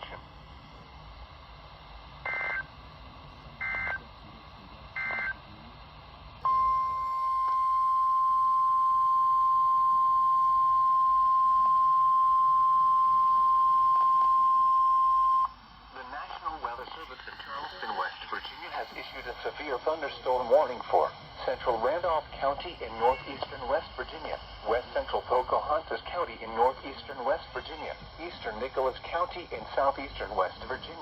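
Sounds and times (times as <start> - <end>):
steady single-pitch alarm tone: 6.4 - 15.6.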